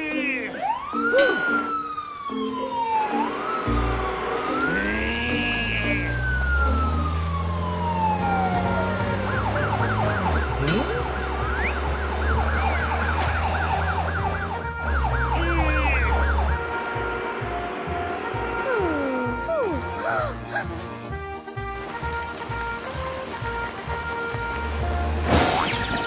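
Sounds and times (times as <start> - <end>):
siren warbling: 0.0 - 16.6
falling whistle-like tone: 0.4 - 7.3.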